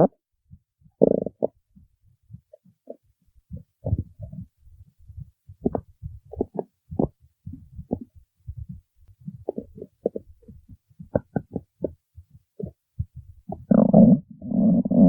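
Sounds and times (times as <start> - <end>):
cartoon stomach growl gurgles: 1.0 - 1.6, 5.6 - 8.1, 9.3 - 12.0, 13.5 - 15.0.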